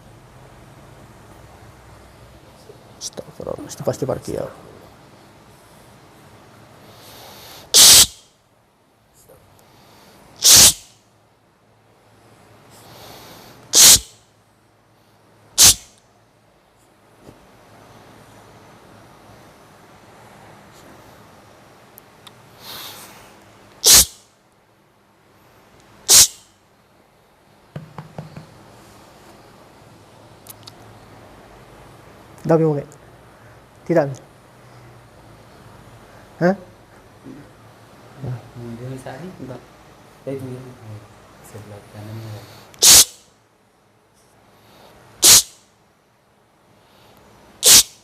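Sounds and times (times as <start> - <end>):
forceful bursts of breath: 6.8 - 8.3, 9.7 - 11.0, 12.7 - 14.2, 22.5 - 24.2, 42.3 - 43.2, 44.5 - 45.6.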